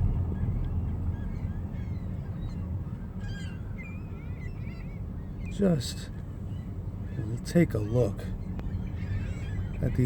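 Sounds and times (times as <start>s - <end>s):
flock of birds calling: 1.2s - 10.0s.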